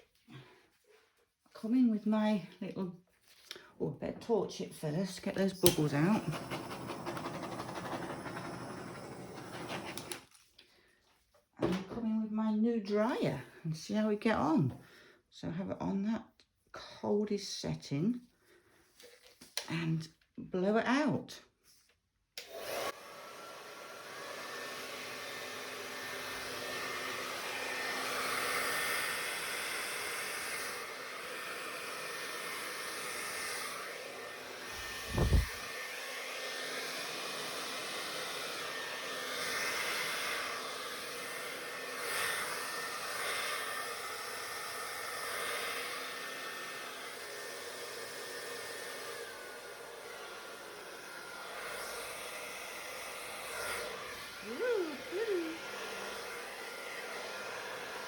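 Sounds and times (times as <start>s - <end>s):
hairdryer blowing: 5.4s - 10.3s, 22.4s - 58.0s.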